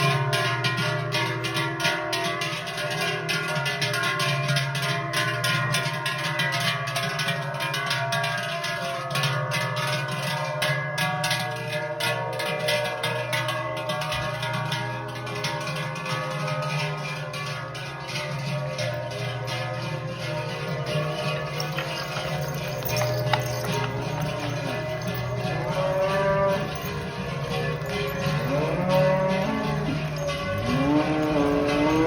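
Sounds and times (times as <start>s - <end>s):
cowbells clanging: 0.0s - 32.0s.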